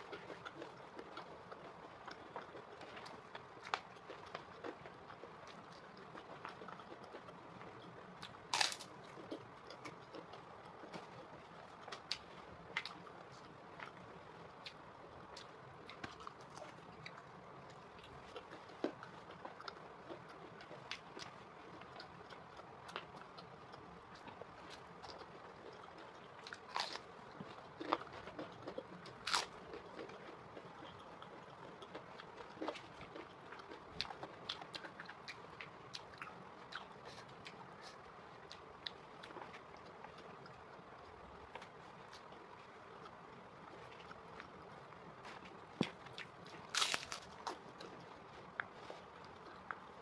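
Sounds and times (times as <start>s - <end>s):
crisp bite crunch: 0.0s - 14.0s, 24.2s - 38.6s, 45.2s - 48.0s
person chewing food: 0.0s - 50.0s.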